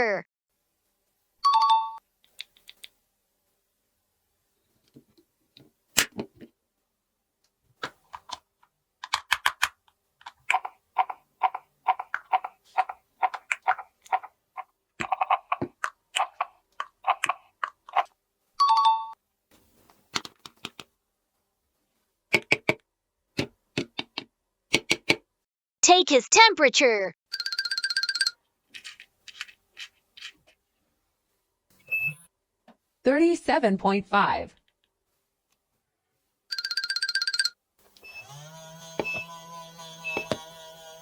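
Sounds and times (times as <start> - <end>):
plastic toy pieces clicking: 9.0 - 14.3.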